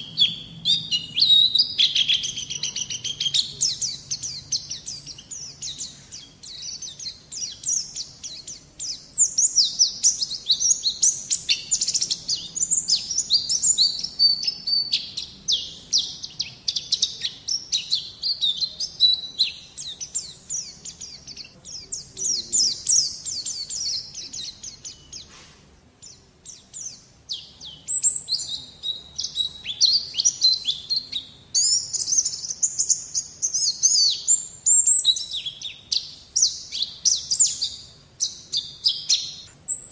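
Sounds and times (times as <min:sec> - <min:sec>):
bird twittering chirps: 0:00.0 - 0:39.9.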